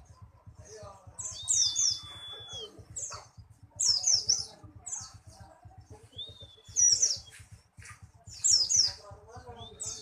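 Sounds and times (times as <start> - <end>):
bird chirping: 0.0 - 10.0
bird whistle: 1.2 - 3.2.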